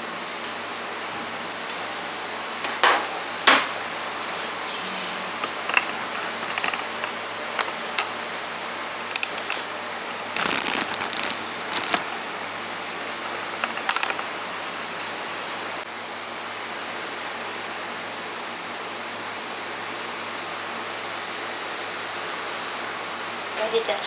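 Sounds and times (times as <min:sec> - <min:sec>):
steady hiss and low hum: 0:00.0 - 0:15.9
clicks and knocks of handling: 0:05.4 - 0:08.2, 0:13.6 - 0:14.3.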